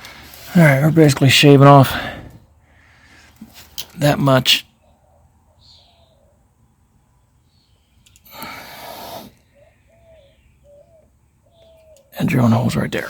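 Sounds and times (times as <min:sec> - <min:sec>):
single hiss: 0:08.3 - 0:09.5.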